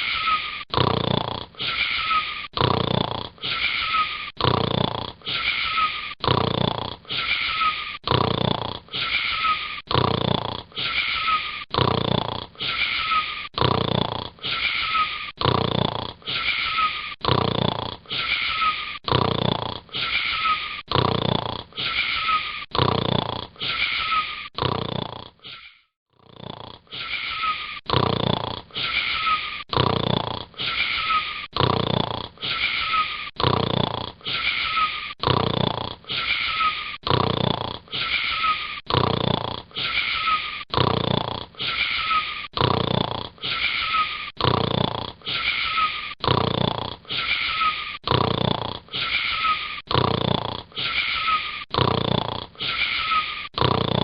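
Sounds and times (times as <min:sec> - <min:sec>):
boy snoring with wheezy whistle: 0:00.0 - 0:54.0.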